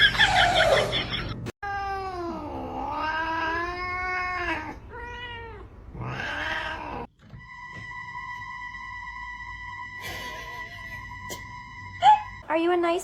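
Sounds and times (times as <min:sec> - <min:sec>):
cat yowling: 0:01.6 - 0:07.1.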